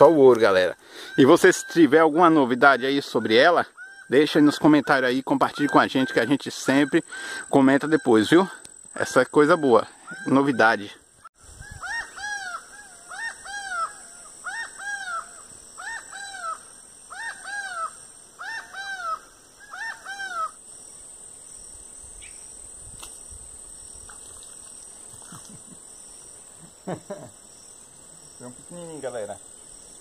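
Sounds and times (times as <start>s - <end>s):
falcon calling: 0.9s - 8.3s, 9.4s - 10.8s, 11.6s - 20.6s.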